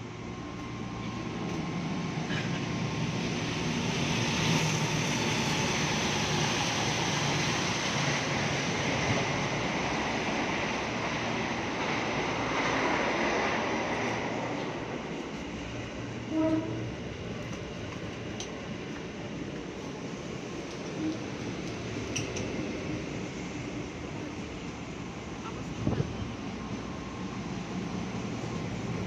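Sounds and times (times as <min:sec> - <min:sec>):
electric train moving: 0:00.0 - 0:29.0.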